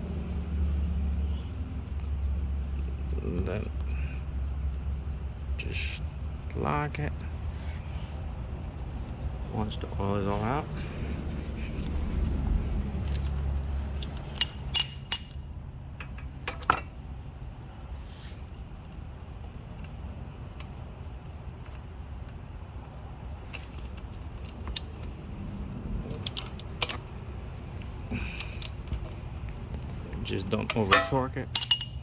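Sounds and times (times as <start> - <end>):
metallic wrench clicks and clinks: 13.0 - 15.5, 26.1 - 27.0, 27.8 - 29.0, 31.0 - 32.0.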